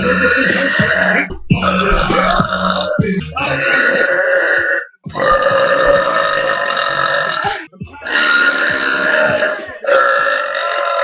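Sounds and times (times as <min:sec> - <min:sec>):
woman belching: 0:03.6 - 0:11.0.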